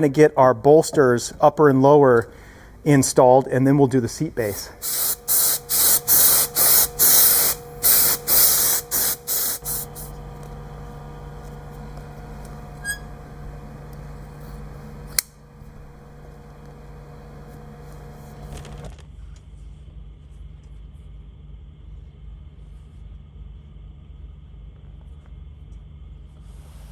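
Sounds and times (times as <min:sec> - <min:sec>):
steady hum: 0:00.0 - 0:26.9
spray gun hissing bursts: 0:04.4 - 0:10.1
sharp click: 0:15.1 - 0:15.4.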